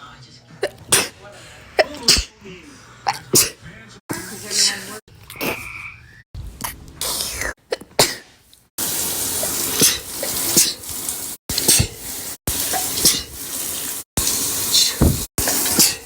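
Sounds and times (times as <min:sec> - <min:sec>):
person sneezing: 0:01.8 - 0:02.4, 0:15.0 - 0:16.0.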